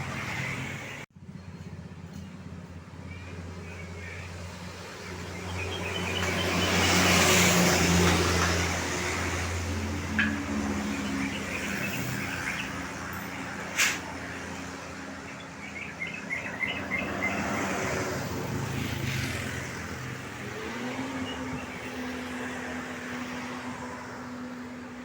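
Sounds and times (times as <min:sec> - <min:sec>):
passing traffic: 0:00.0 - 0:25.0
small birds chirping: 0:15.1 - 0:17.9.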